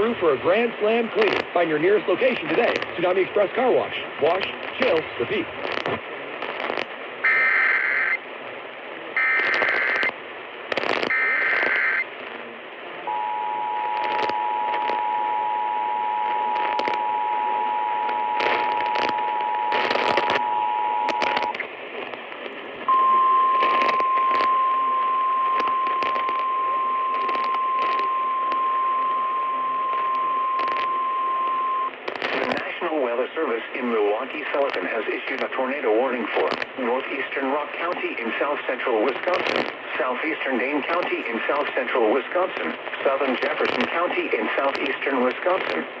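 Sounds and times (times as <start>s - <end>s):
radio static with crackles: 0.0s - 46.0s
screeching data bursts: 6.6s - 8.2s, 9.2s - 10.1s, 10.8s - 12.1s, 13.8s - 21.6s, 22.9s - 32.6s
two-tone attention signal: 13.1s - 21.5s, 22.9s - 31.9s.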